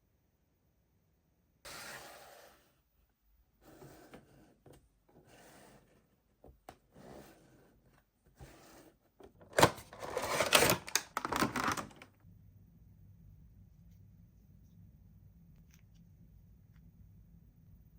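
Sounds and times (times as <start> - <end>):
packaging rustling: 9.4 - 12.1
plastic and cardboard crackling: 9.4 - 12.1.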